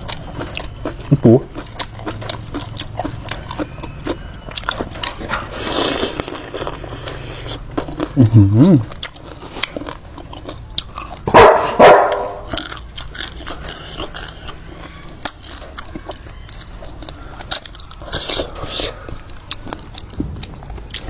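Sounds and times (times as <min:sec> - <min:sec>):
chewing and crunching: 0:00.0 - 0:21.0
dog barking: 0:11.3 - 0:12.5.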